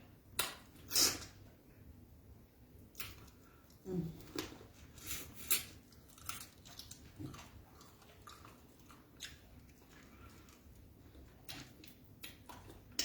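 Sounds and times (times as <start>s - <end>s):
person chewing food: 2.8s - 13.0s.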